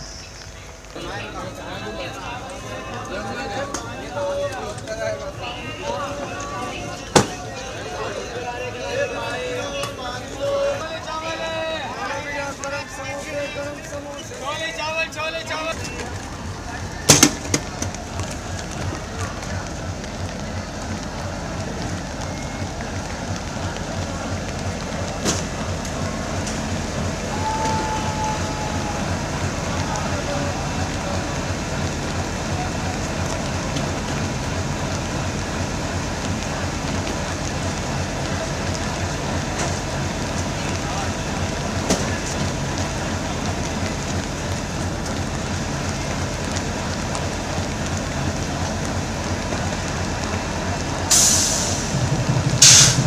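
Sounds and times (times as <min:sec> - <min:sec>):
diesel locomotive engine chugging: 0:00.0 - 0:53.0
train rushing noise: 0:00.0 - 0:53.0
train clicks: 0:13.8 - 0:53.0.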